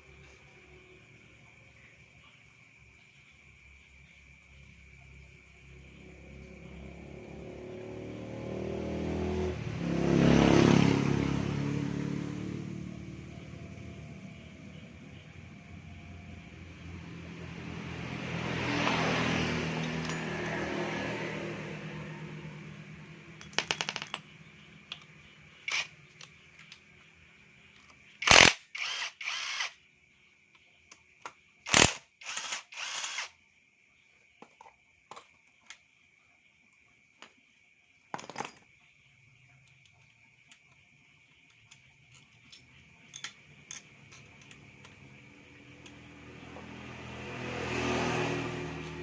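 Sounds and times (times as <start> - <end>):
tools clicking and knocking: 19.8 - 20.6, 23.4 - 26.9, 39.6 - 46.1
short loud tool bursts: 28.2 - 29.8, 31.7 - 33.3.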